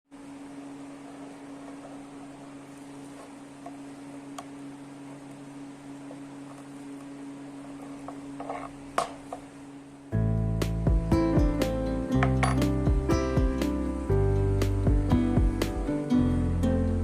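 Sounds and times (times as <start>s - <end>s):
steady electrical hum: 0.1s - 17.0s
loud music: 10.2s - 16.7s.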